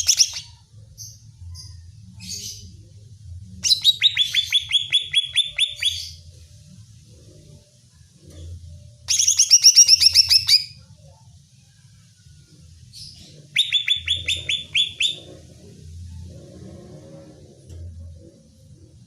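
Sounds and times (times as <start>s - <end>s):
bird singing sharp notes: 13.5s - 15.3s.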